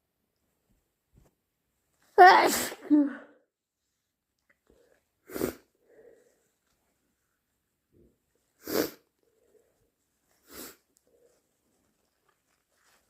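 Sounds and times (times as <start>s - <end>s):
person sneezing: 2.2s - 3.3s, 5.3s - 5.7s, 8.6s - 9.0s
faint breathing: 4.7s - 6.8s.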